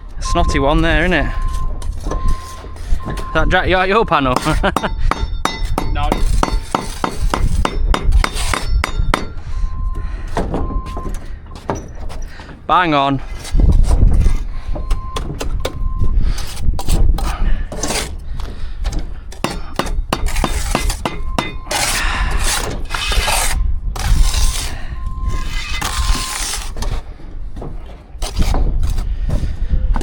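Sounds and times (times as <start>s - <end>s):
scraping: 0.0s - 30.0s
irregular knocks and clicks: 5.1s - 12.7s, 13.7s - 16.0s, 16.9s - 21.6s.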